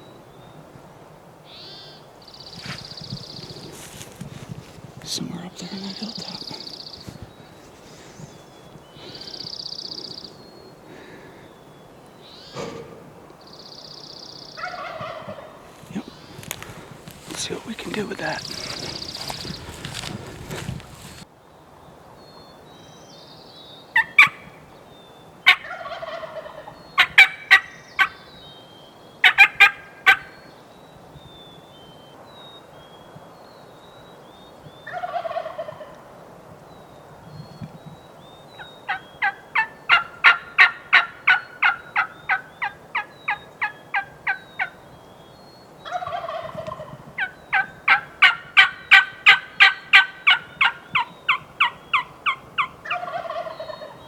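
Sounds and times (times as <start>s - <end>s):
turkey yelps: 14.6s - 15.6s, 24.0s - 24.4s, 25.4s - 28.2s, 29.2s - 30.3s, 34.9s - 35.9s, 38.6s - 44.8s, 45.8s - 54.0s
sharp turkey notes: 14.6s - 21.2s
turkey gobbling: 14.6s - 21.2s, 24.0s - 24.4s, 25.4s - 28.2s, 29.2s - 30.3s, 34.9s - 36.0s, 38.6s - 44.8s, 45.8s - 54.0s.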